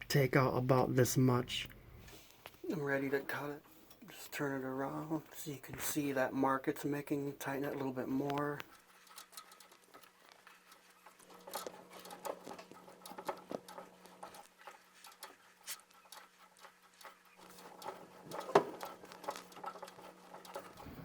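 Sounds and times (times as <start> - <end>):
pipe cutter clicking and scraping: 7.4 - 21.0.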